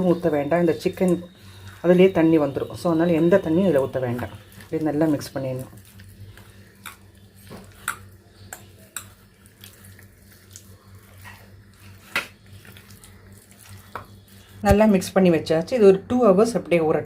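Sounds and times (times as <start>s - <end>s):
wet squelching: 3.1s - 14.9s
clicks and taps against bowl: 7.8s - 9.2s.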